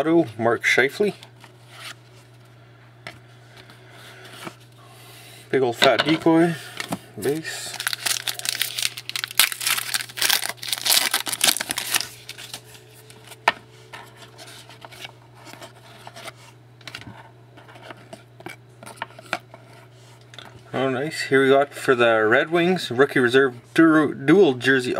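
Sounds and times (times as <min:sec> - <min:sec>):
steady low hum: 0:00.0 - 0:24.9
packaging crinkling: 0:07.2 - 0:13.4.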